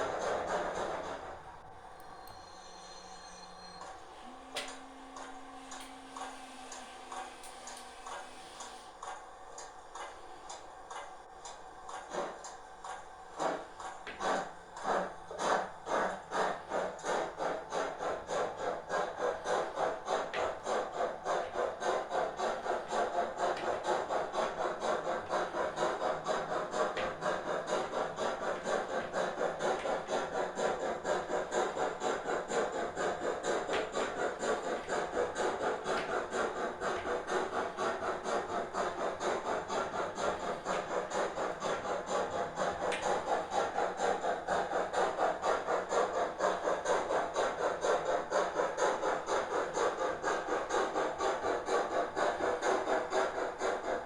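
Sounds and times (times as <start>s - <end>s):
steam locomotive chuffing: 0.0s - 54.0s.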